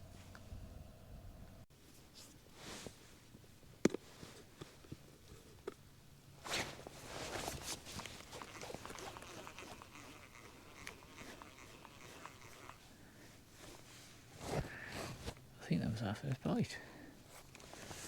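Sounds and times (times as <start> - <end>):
rustling of gear: 6.4 - 15.5, 17.2 - 18.0.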